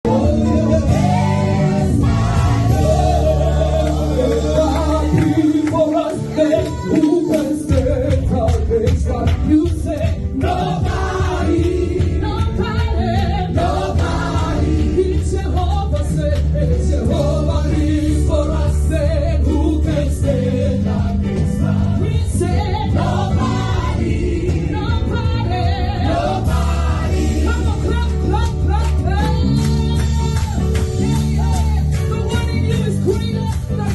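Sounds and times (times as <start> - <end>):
low bass notes: 0.0 - 6.5, 7.6 - 33.9
worship team singing in parts: 0.1 - 28.4
percussion hits: 7.0 - 16.7.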